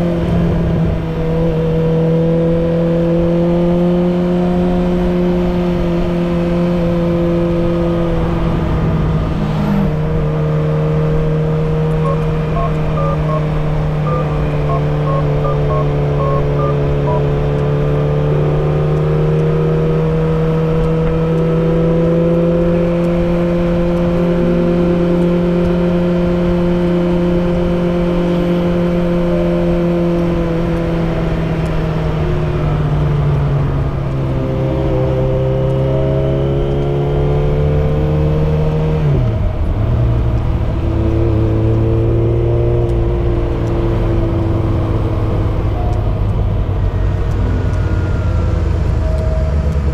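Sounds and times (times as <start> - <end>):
motorcycle engine cruising: 0.0 - 49.9.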